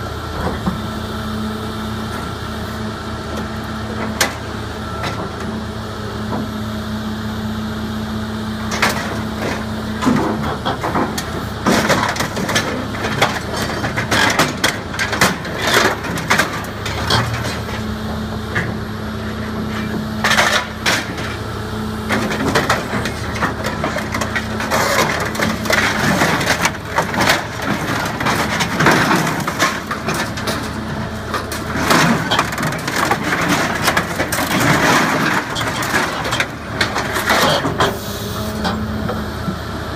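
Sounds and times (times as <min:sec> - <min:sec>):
diesel engine running: 0:00.0 - 0:39.9
metal crunching and cracking: 0:08.6 - 0:17.9, 0:19.4 - 0:37.9.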